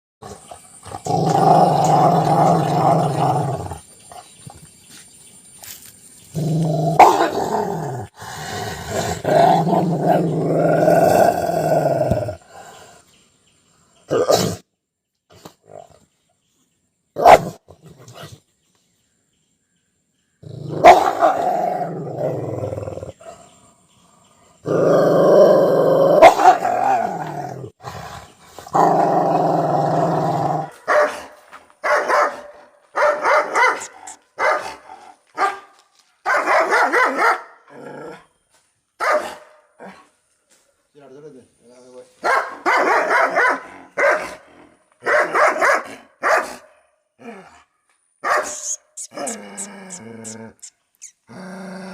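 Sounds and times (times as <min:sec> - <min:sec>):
dogs growling: 0:00.2 - 0:04.4, 0:06.3 - 0:12.7, 0:20.4 - 0:23.5, 0:24.6 - 0:30.8
dogs barking: 0:06.9 - 0:07.5, 0:17.2 - 0:17.6, 0:20.8 - 0:21.5, 0:26.2 - 0:26.8, 0:30.6 - 0:37.6, 0:39.0 - 0:39.6, 0:42.2 - 0:44.4, 0:45.0 - 0:46.7, 0:48.2 - 0:50.7.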